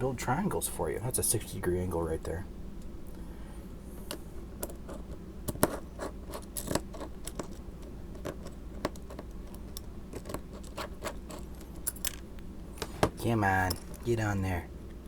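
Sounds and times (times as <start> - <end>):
metal parts clicking and scraping: 8.2 - 12.2, 13.6 - 14.1.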